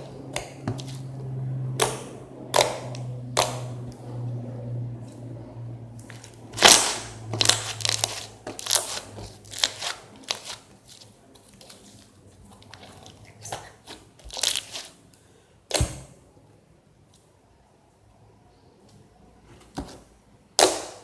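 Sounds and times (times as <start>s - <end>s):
faint low hum: 0.0s - 20.6s.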